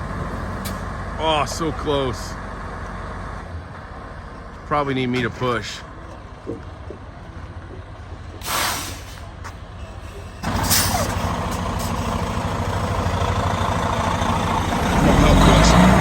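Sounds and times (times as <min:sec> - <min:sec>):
diesel truck engine: 0:00.0 - 0:16.0
air brake hiss: 0:08.4 - 0:09.3, 0:09.9 - 0:11.2.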